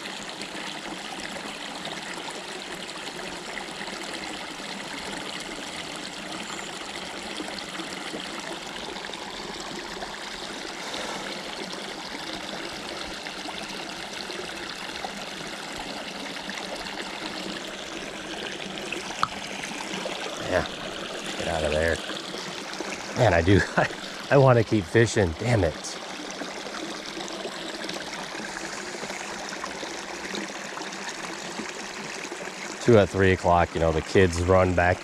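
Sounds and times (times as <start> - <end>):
creek water trickling: 0.0 - 35.0.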